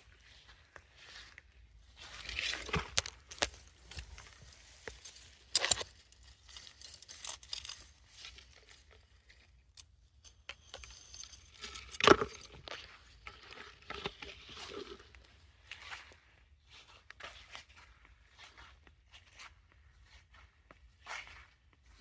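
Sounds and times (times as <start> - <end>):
rustling and crackling: 0.8 - 15.4
loud crunches: 2.1 - 9.2.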